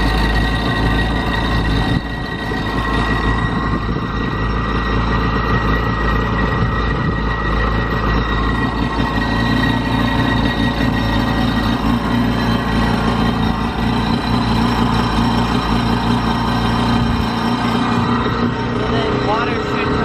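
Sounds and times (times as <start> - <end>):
jet ski engine running: 0.0 - 20.0.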